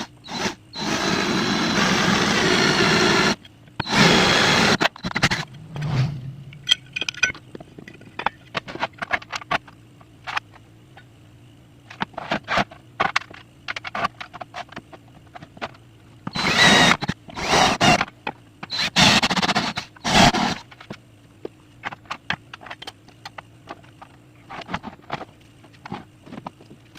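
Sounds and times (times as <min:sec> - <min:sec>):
power tool bursts: 0:00.0 - 0:05.4, 0:16.3 - 0:18.0, 0:18.7 - 0:20.6
metal parts clicking and knocking: 0:06.5 - 0:10.6, 0:11.9 - 0:17.2, 0:21.8 - 0:26.9.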